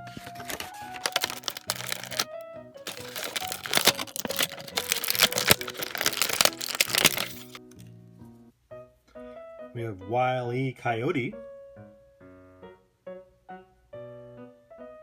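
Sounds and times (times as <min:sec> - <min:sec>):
toy packaging crinkling: 0:01.0 - 0:07.6.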